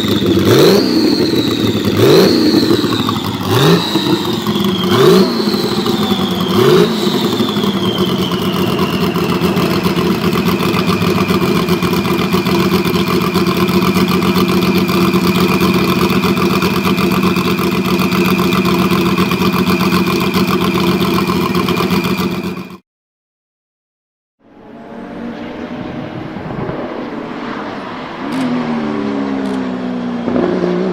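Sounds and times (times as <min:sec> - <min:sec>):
car engine throttle blip and idle: 0:00.0 - 0:22.8
high turbo whistle: 0:00.0 - 0:22.8.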